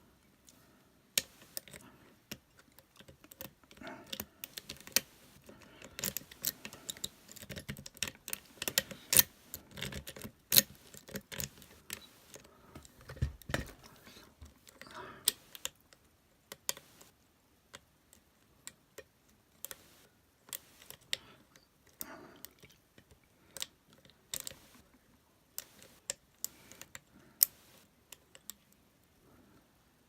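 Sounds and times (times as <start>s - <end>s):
lock picks clicking in a padlock: 1.2s - 12.0s.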